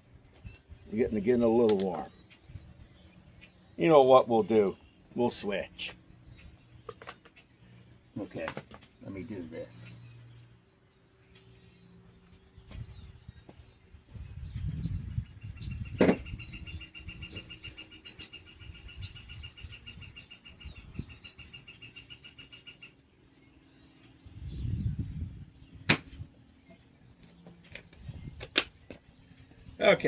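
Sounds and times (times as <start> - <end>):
tools bumping and rustling: 6.8 - 7.4, 16.0 - 16.4.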